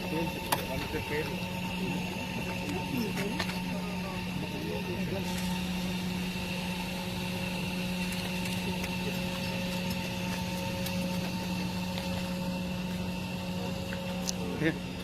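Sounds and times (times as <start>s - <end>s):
helicopter cabin drone: 0.0s - 15.0s.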